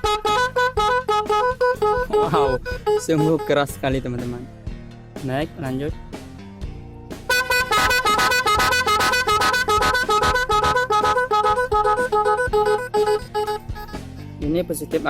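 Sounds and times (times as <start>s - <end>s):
musical horn playing short notes: 0.0s - 3.5s, 7.3s - 14.0s.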